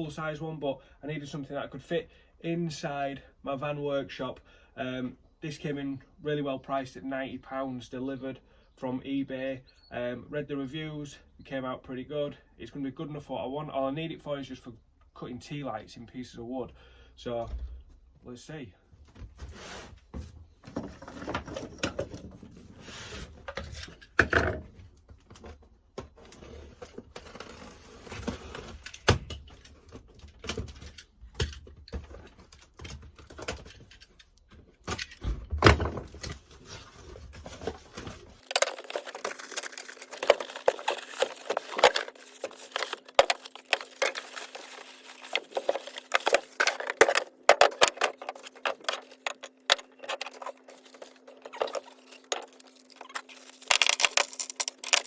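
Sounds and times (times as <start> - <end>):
packaging rustling: 36.1 - 55.0
clinks and knocks of metal parts: 37.5 - 55.0.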